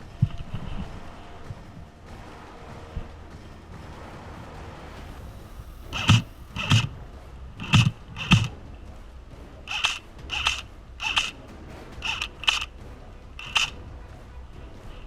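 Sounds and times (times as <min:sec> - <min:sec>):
airsoft gun shots: 0:05.9 - 0:06.9, 0:07.6 - 0:08.5, 0:09.7 - 0:11.4.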